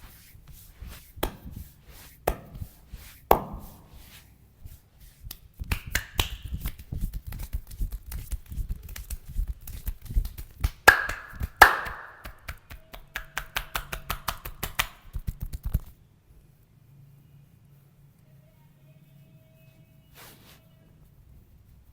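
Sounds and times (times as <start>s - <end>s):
hands chopping and slapping body: 1.2s - 1.6s, 2.3s - 2.7s, 3.3s - 3.8s.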